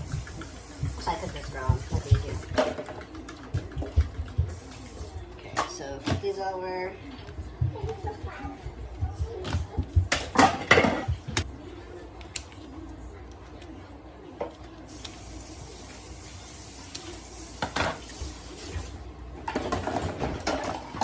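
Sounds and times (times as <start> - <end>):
utensils and dishes clinking: 10.0 - 11.4, 17.4 - 21.0.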